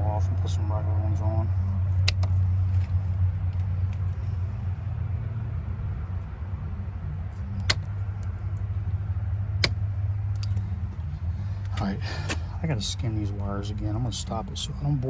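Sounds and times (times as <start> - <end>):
low background rumble: 0.0 - 15.0
wire cutters snipping wire: 2.0 - 2.4, 7.6 - 8.4, 9.6 - 10.7.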